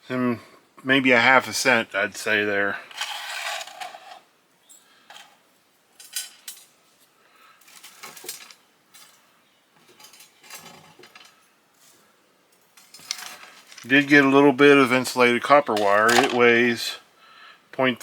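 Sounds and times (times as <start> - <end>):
scrap metal clinking: 2.8 - 6.8, 7.6 - 14.3, 15.7 - 16.5.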